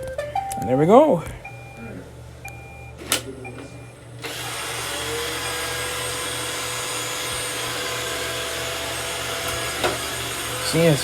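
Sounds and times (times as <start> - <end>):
robot vacuum running: 4.2 - 11.0.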